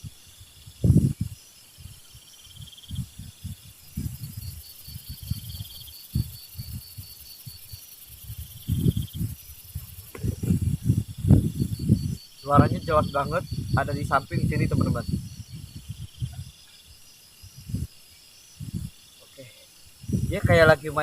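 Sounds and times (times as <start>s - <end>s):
high insect hiss: 0.0s - 21.0s
insects trilling: 0.0s - 21.0s
low thumps: 8.7s - 16.4s.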